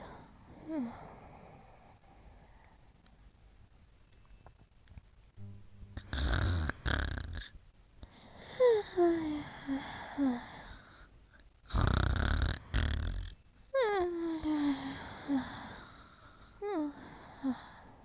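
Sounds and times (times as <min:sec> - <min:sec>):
person snoring loudly: 0:06.0 - 0:07.5, 0:11.7 - 0:13.3.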